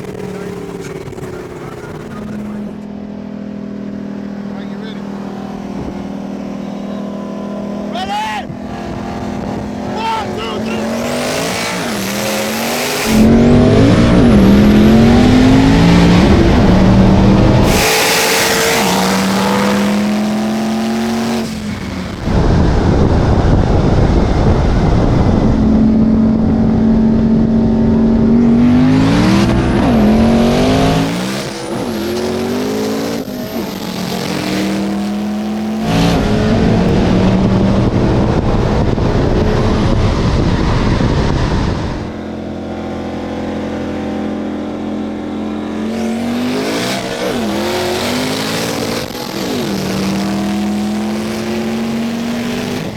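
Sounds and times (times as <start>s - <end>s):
race car engines at full throttle: 0.0s - 52.9s.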